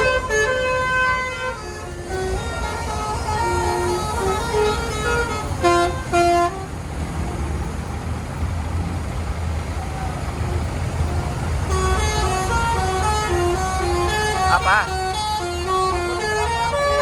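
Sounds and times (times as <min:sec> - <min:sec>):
loud horn toots: 0:00.0 - 0:06.8, 0:11.1 - 0:17.0
musical bus horn: 0:00.0 - 0:07.7, 0:10.5 - 0:17.0
bus engine rumble: 0:00.0 - 0:17.0.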